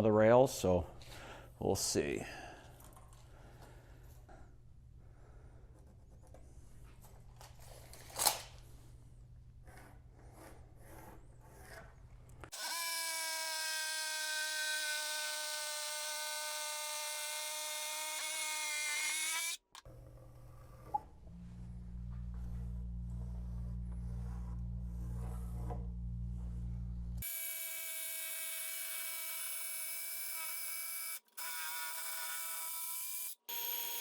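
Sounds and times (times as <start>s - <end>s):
power tool motor running: 12.5s - 19.8s, 27.2s - 34.0s.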